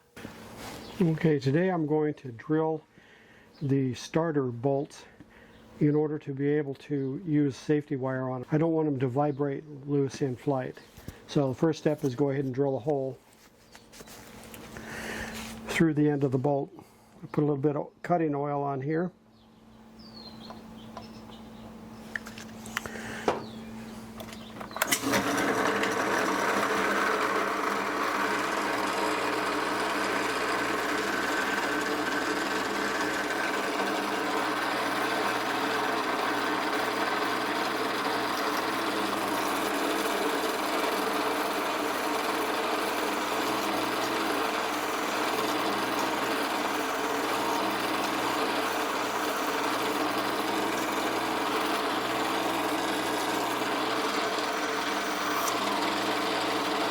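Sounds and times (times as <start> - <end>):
electric drill drilling: 24.2 - 56.9.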